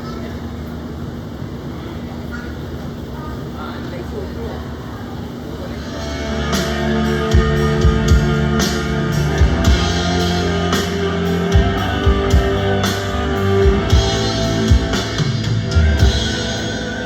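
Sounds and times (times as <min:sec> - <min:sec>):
bass guitar sustained notes: 0:05.8 - 0:17.0
drum kit steady beat: 0:05.8 - 0:17.0
electric guitar sustained notes: 0:05.8 - 0:17.0.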